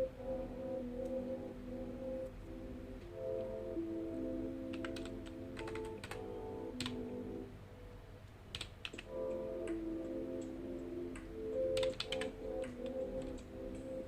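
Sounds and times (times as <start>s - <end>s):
soft background music: 0.0s - 14.0s
typing on computer keyboard: 4.7s - 7.0s, 8.5s - 13.9s.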